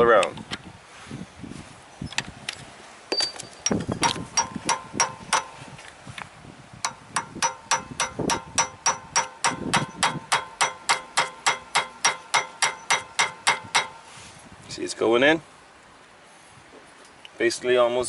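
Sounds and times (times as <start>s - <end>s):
hammer tapping on metal: 3.6s - 5.6s, 6.8s - 14.0s.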